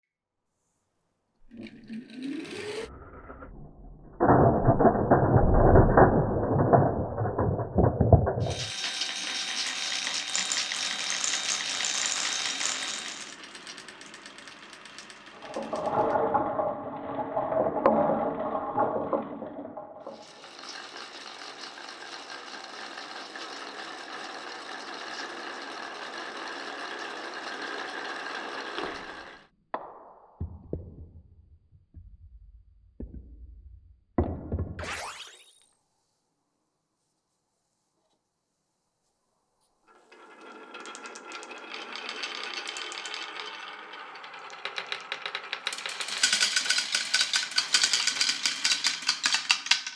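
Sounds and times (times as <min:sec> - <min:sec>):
marbles rattling on wooden tracks: 0:01.5 - 0:02.9, 0:04.2 - 0:29.4, 0:39.9 - 0:49.9.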